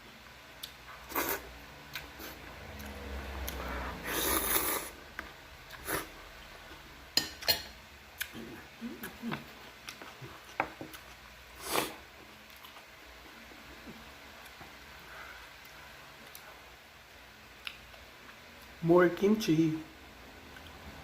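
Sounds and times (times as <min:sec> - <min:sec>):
person slurping noodles: 0:01.0 - 0:01.5, 0:03.4 - 0:05.0, 0:05.7 - 0:06.1, 0:11.6 - 0:12.0
chewing: 0:08.2 - 0:11.2, 0:12.5 - 0:12.9.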